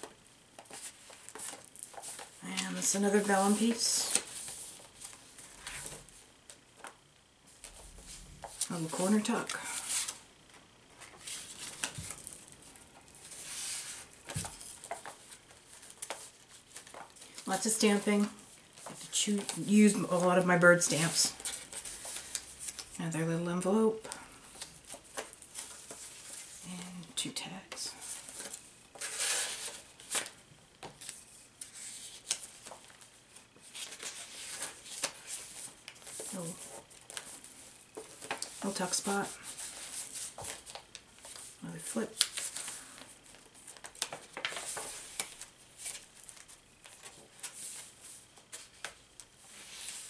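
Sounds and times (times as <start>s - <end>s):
paper rustling: 0.0s - 7.0s, 11.0s - 17.4s, 27.9s - 50.0s.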